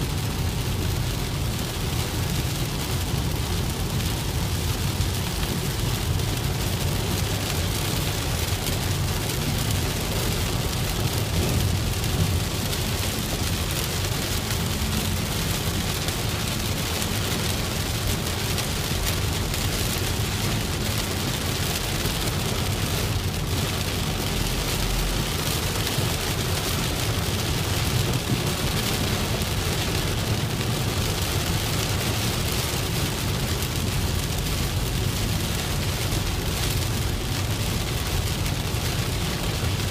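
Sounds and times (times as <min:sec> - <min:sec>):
car road and engine rumble: 0:00.0 - 0:39.9
rain hissing on a car: 0:00.0 - 0:39.9.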